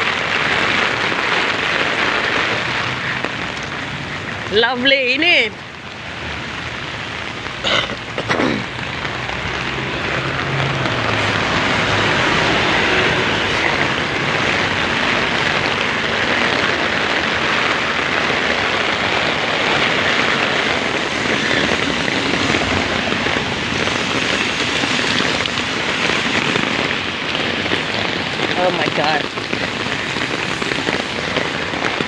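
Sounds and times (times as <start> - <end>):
heavy rain on an umbrella: 0.0 - 32.0.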